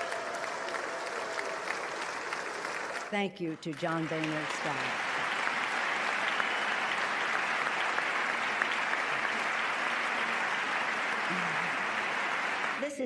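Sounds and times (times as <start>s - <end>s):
crowd applauding: 0.0s - 13.0s.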